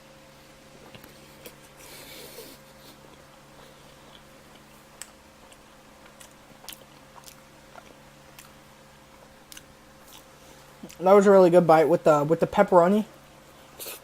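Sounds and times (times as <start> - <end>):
low electrical hum: 0.0 - 14.0
wet chewing mouth clicks: 4.0 - 8.6.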